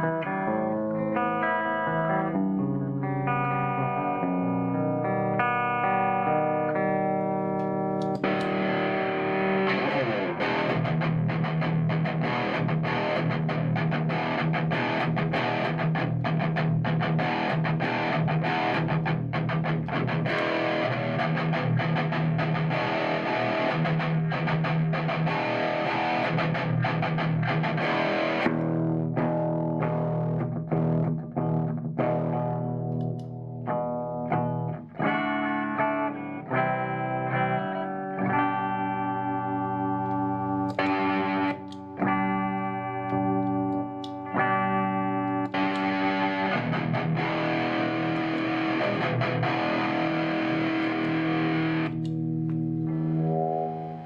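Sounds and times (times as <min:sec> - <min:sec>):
clean electric guitar notes: 0:00.0 - 0:54.0
distorted electric guitar: 0:00.0 - 0:54.0
footswitch click: 0:07.6 - 0:08.8, 0:43.1 - 0:44.2.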